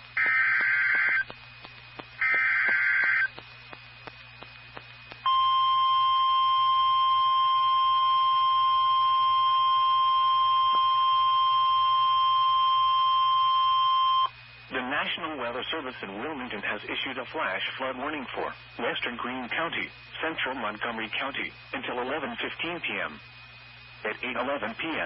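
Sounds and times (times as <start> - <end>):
faint static clicks: 0.0 - 14.7
steady warning alarm tone: 0.1 - 1.3, 2.2 - 3.4, 5.2 - 14.3.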